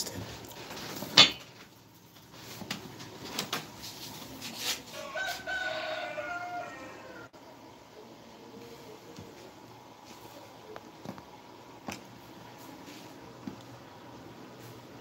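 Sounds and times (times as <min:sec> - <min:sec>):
rooster crowing: 0:04.9 - 0:07.4.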